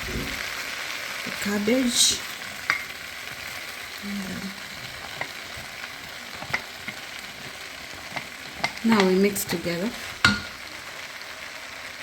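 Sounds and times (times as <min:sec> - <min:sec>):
spoon stirring rice in pot: 0:01.9 - 0:10.7.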